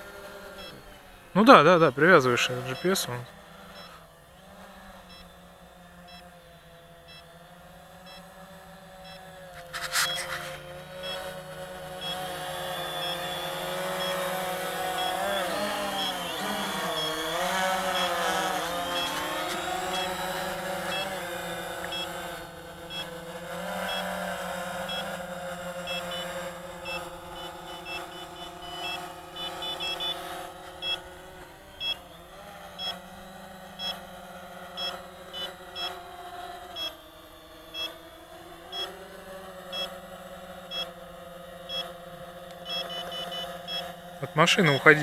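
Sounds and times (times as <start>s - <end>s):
drone propellers humming: 0.0s - 45.0s
short high electronic beeps: 9.6s - 11.3s, 12.0s - 18.3s, 25.9s - 30.2s.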